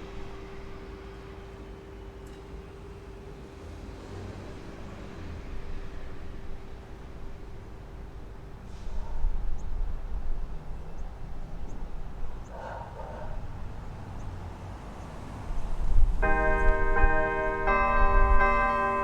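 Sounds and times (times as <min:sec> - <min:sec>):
church bells ringing a tune: 0:16.2 - 0:19.0.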